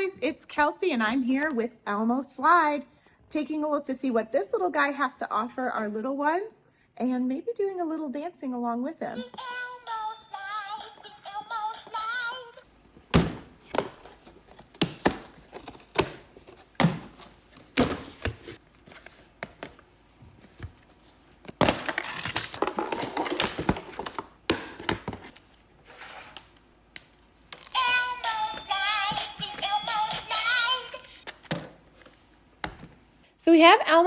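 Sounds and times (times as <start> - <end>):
packaging knocks and thunks: 13.0 - 18.6, 21.5 - 25.3.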